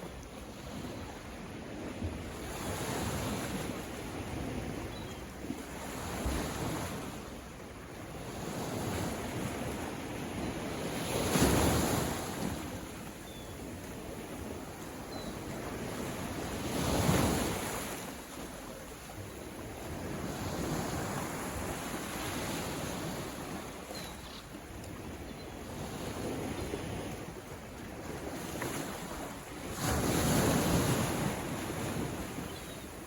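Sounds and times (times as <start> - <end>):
ocean waves breaking: 8.1 - 33.0.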